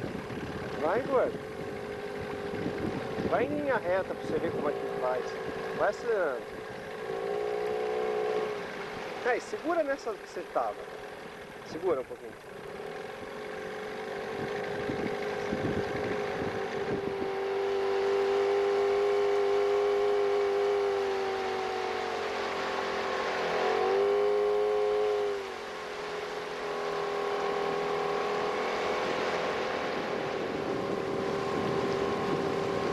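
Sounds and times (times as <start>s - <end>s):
wind buffeting microphone: 0.0s - 5.8s, 14.2s - 17.6s, 28.9s - 32.9s
outboard motor droning: 0.0s - 32.9s.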